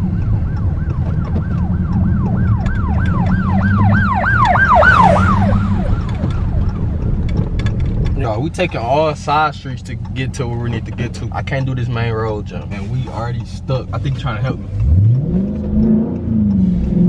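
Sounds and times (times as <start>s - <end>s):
siren yelping: 0.0s - 7.2s
low engine rumble: 0.0s - 17.0s.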